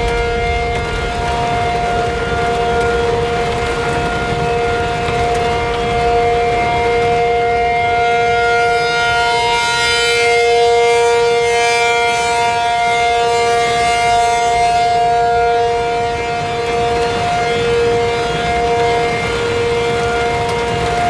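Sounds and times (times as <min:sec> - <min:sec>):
two-tone warning siren: 0:00.0 - 0:21.0.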